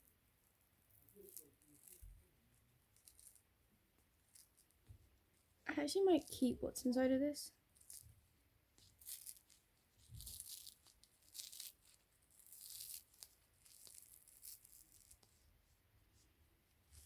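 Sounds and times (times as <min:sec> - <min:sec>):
packet crinkling and tearing: 0:08.8 - 0:15.3.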